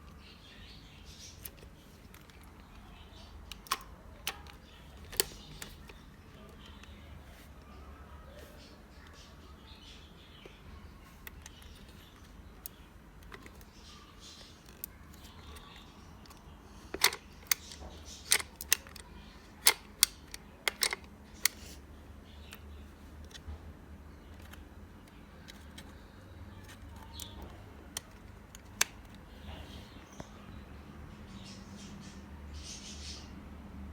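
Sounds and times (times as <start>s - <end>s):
objects clicking and tapping: 14.6s - 21.8s.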